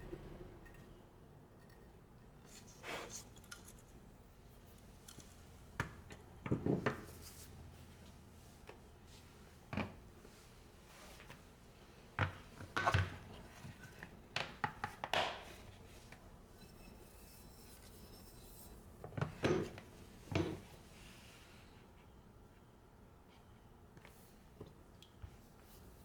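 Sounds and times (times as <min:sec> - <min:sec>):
knife scraping on whetstone: 0:16.6 - 0:18.8.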